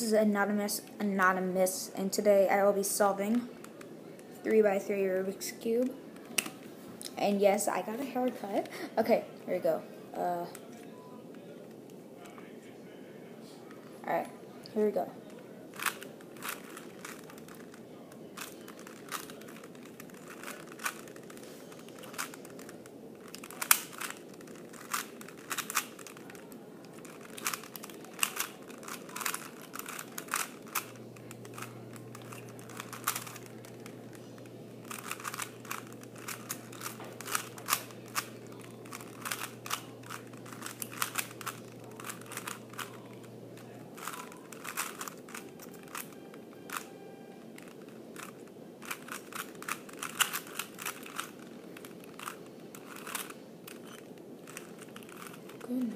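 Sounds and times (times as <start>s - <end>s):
puzzle cube plastic clicks: 15.7s - 55.8s.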